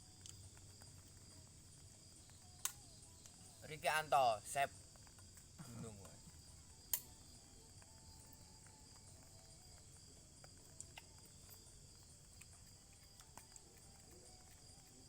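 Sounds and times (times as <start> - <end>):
faint ticks: 0.0 - 3.6, 4.2 - 15.0
insects chirring: 0.0 - 15.0.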